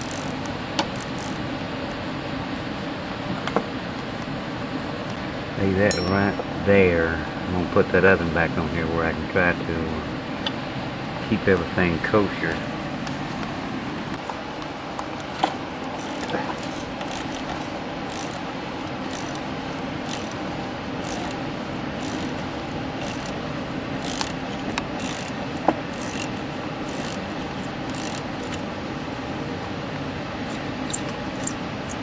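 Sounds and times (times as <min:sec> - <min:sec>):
steady background hum: 0:00.0 - 0:32.0
hand tools clicking on metal: 0:16.0 - 0:18.4.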